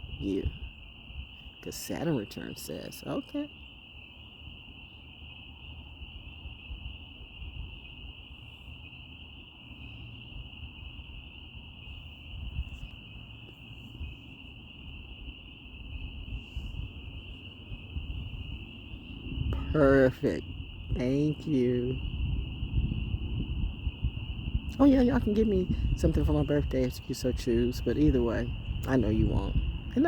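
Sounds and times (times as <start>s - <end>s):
tree frogs calling: 0.0s - 30.0s
low irregular rumble: 6.0s - 30.0s.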